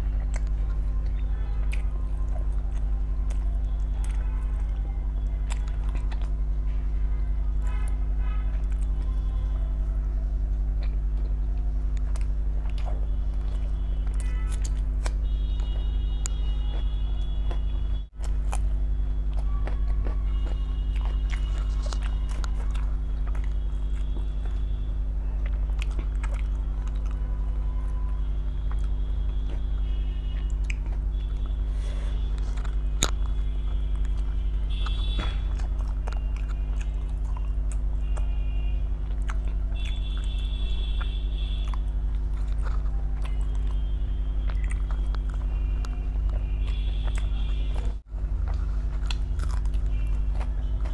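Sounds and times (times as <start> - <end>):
chewing and biting: 0.0 - 50.9
low electrical hum: 0.0 - 50.9
wet mouth clicks: 32.2 - 38.3, 39.0 - 50.9.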